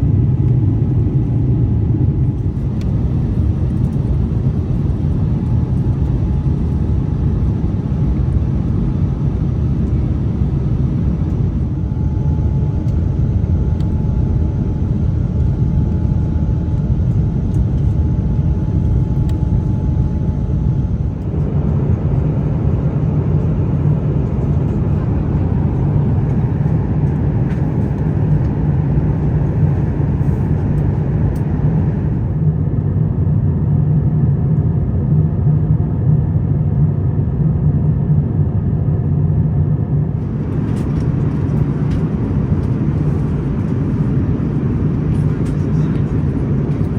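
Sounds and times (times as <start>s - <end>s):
airplane cabin rumble: 0.0s - 46.9s.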